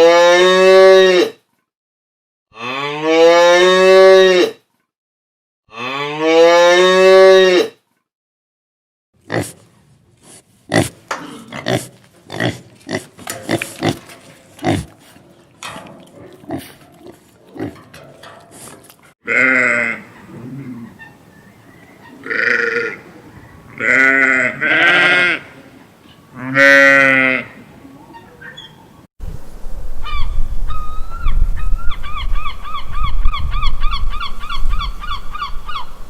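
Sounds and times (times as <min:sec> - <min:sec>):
pig grunting: 0:09.2 - 0:09.6, 0:10.7 - 0:18.0, 0:18.7 - 0:21.0.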